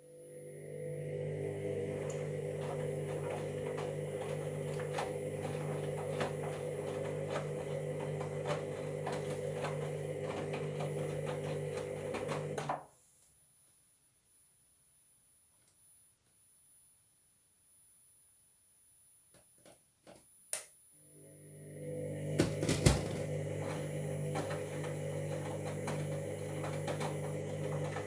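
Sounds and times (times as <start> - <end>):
washing machine motor humming: 0.0 - 12.8, 21.0 - 28.0.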